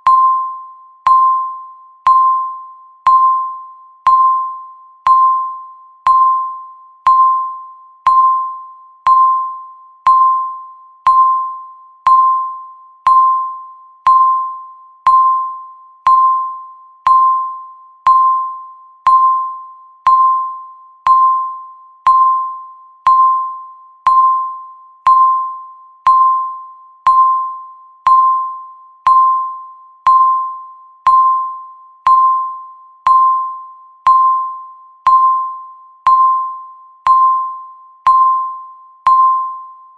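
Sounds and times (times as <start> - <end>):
countdown timer beeps: 0.0 - 39.9.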